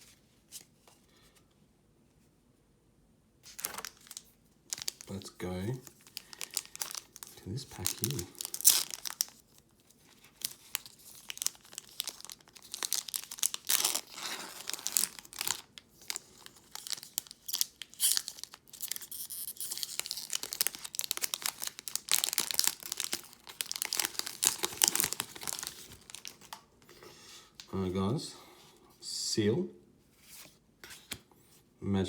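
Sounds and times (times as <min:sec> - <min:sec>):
foil wrapper tearing and crinkling: 0:03.5 - 0:26.6.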